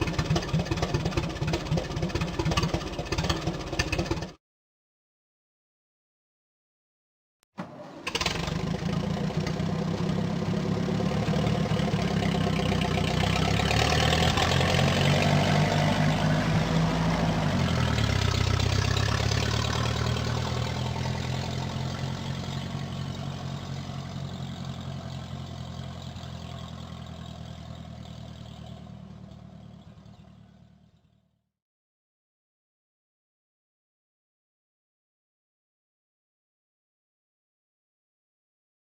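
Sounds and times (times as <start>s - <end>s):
cartoon tractor engine chugging: 0.0s - 4.4s, 7.6s - 31.3s.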